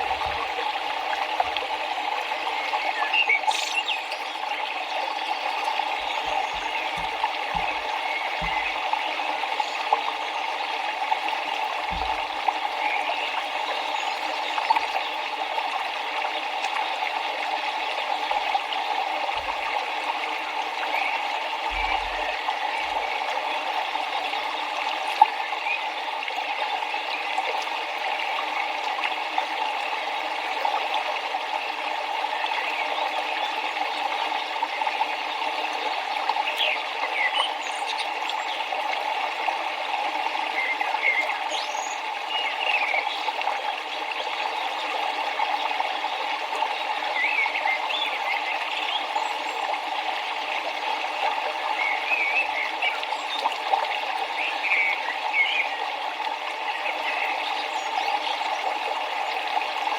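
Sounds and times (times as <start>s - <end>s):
river water running: 0.0s - 59.9s
bird chirps: 2.9s - 8.8s.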